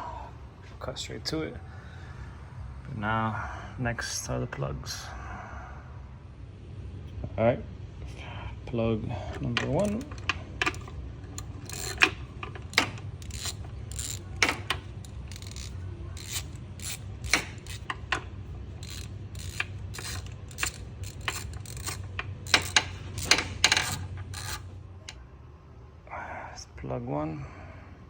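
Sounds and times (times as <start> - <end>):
steady low hum: 0.0 - 28.0
ratchet clicking: 9.6 - 25.2.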